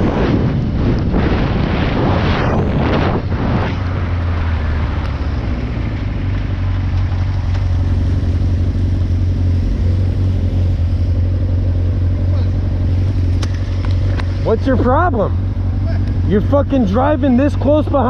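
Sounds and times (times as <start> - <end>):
rush of wind or spray: 0.0 - 5.0
motorcycle engine cruising: 0.0 - 18.0
wind and road noise: 0.0 - 18.0.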